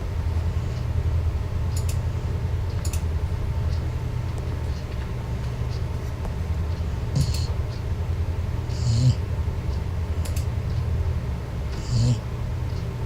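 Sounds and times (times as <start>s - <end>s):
puppy snoring: 7.1s - 7.6s, 8.6s - 9.3s, 11.7s - 12.3s.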